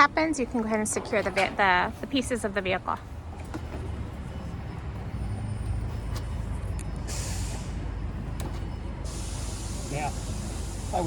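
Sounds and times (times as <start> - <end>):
truck engine idling: 0.0 - 11.0
burst of hissing air: 9.1 - 11.0.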